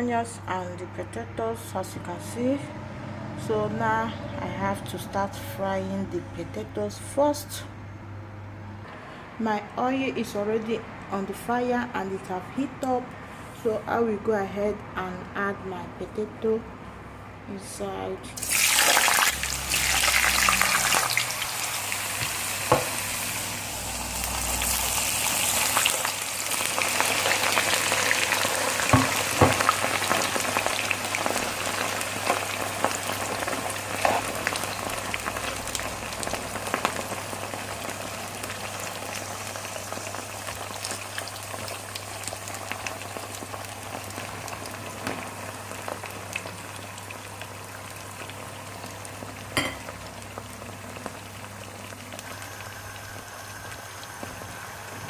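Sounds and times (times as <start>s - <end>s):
potatoes sizzling in oil: 18.4s - 55.0s.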